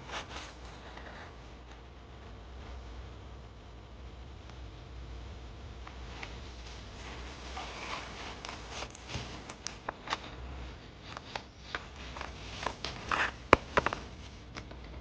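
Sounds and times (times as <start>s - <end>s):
paper rustling: 0.0s - 1.4s, 6.0s - 15.0s.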